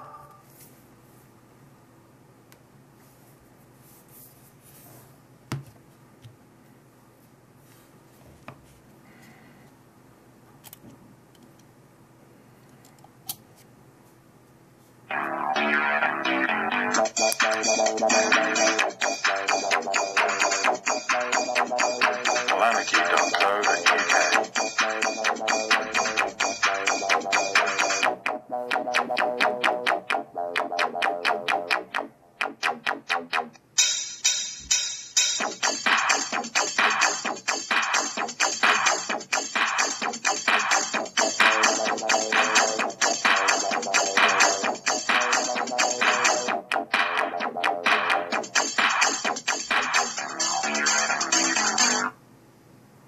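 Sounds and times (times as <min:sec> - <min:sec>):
electronic music through phone speaker: 0:00.0 - 0:00.4, 0:15.1 - 0:52.2.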